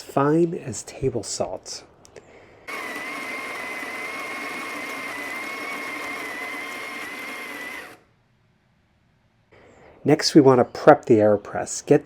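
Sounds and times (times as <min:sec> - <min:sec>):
coffee grinder whining: 0:02.7 - 0:08.0.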